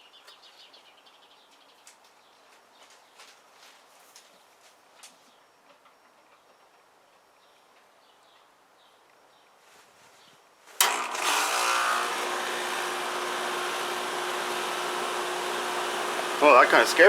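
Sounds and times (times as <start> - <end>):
air conditioner humming: 10.8 - 17.0.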